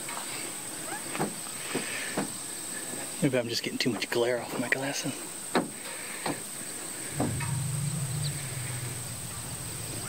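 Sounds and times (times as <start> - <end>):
insects droning: 0.0 - 10.0
low steady hum: 7.0 - 10.0.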